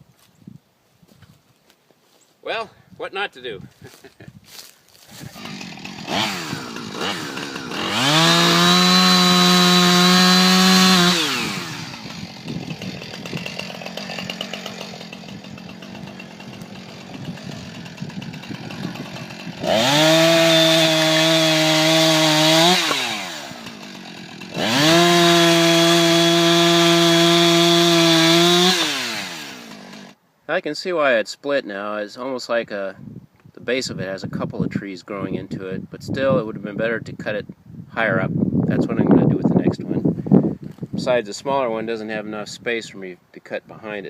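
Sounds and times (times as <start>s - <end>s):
chainsaw revving: 5.1s - 30.2s
chainsaw idling: 5.2s - 30.2s.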